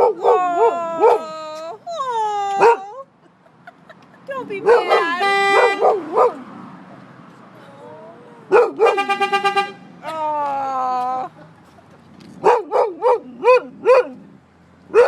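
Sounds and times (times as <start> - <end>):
dog barking: 0.0 - 1.2, 2.6 - 2.9, 4.6 - 6.4, 8.5 - 9.0, 12.4 - 14.2
car horn: 4.6 - 6.3, 8.6 - 10.0.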